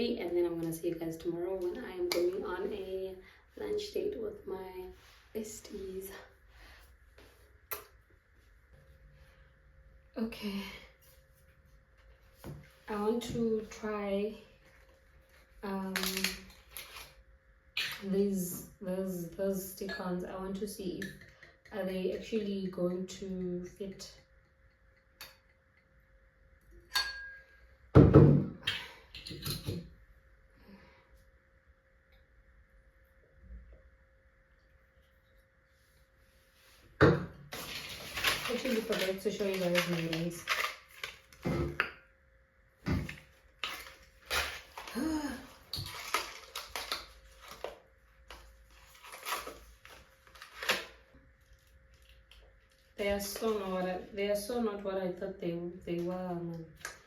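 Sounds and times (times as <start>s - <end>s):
plastic packaging clicks and crinkles: 14.7s - 17.2s, 37.5s - 41.8s, 42.9s - 53.8s.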